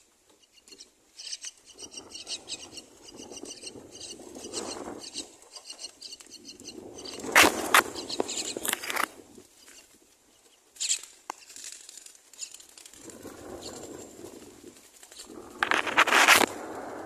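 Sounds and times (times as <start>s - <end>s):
sharp high bird calls: 0.4s - 8.7s
nestlings flapping and rustling: 1.6s - 17.0s.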